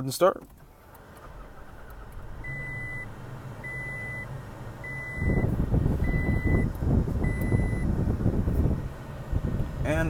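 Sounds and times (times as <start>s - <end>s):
pickup engine running: 0.5s - 10.0s
dashboard warning beep: 2.4s - 7.9s.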